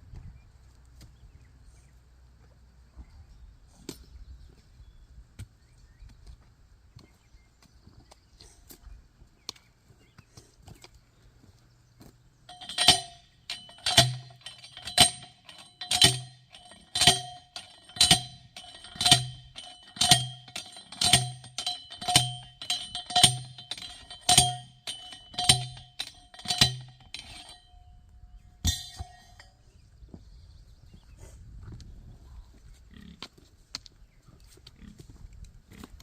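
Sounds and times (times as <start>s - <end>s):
metal clangs ringing: 12.5s - 29.8s.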